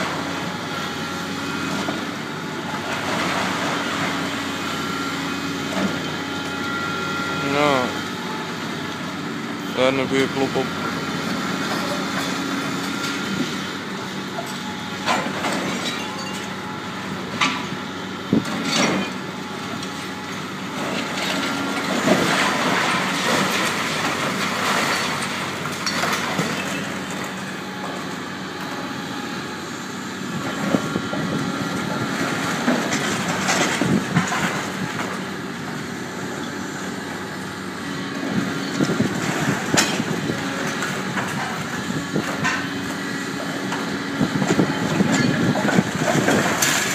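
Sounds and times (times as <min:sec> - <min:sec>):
excavator diesel engine running: 0:00.0 - 0:46.9
metal scrap crushing and scraping: 0:20.8 - 0:27.4, 0:44.5 - 0:46.9.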